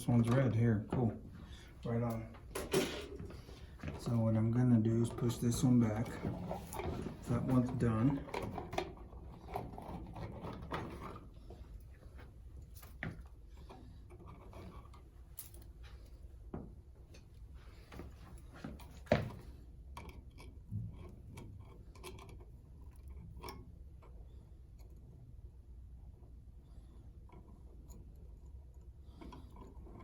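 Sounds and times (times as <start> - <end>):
clicks taps and rustles of wires: 0.0 - 1.2, 5.0 - 25.1.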